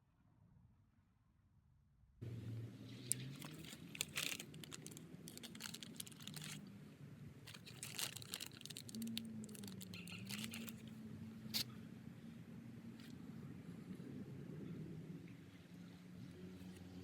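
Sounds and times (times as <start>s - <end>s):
fabric and strap crinkling: 2.9s - 6.7s, 7.4s - 11.0s.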